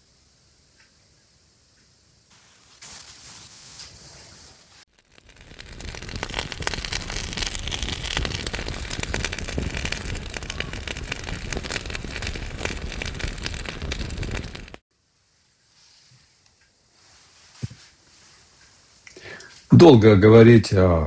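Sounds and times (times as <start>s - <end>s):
low rumble of flame: 4.9s - 14.8s
wood fire crackling: 4.9s - 14.8s.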